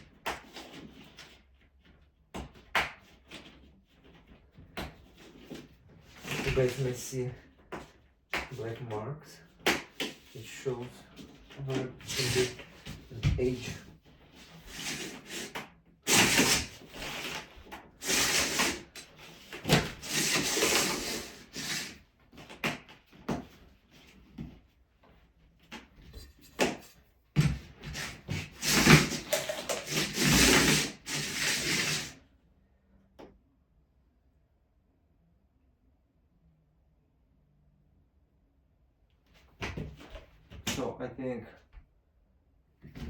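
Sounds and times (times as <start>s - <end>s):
rubbing and scraping of plastic membrane: 0.0s - 8.8s, 9.4s - 24.5s, 26.0s - 32.2s.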